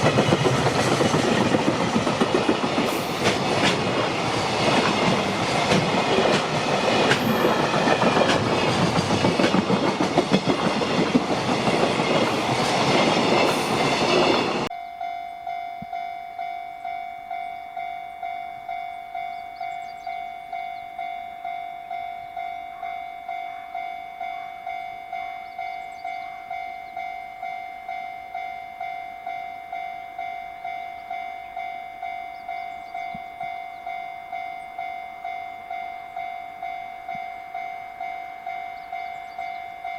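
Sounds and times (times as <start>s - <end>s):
freight train rumbling past: 0.0s - 14.7s
level-crossing alarm dinging: 9.5s - 39.9s.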